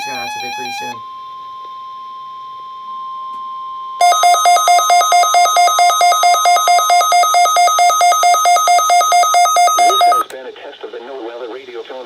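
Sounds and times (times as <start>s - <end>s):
harsh electronic beeping: 4.0s - 10.3s
steady warning alarm tone: 4.0s - 10.3s.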